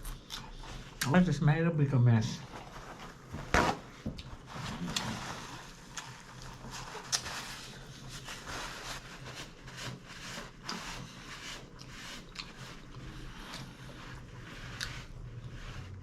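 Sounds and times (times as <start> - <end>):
close chewing: 11.6 - 15.3.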